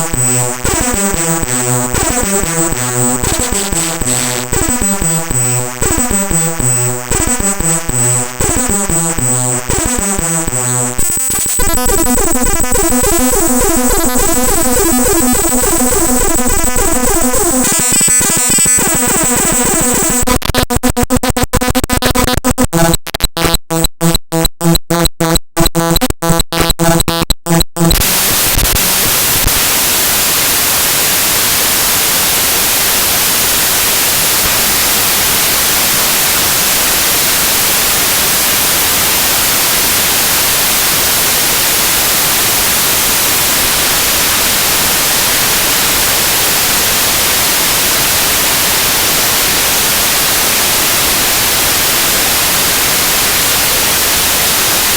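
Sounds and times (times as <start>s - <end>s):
loud static hiss: 0.0s - 9.7s, 10.5s - 20.2s, 28.0s - 54.9s
stuttering buzz of repeating tones: 0.0s - 29.6s.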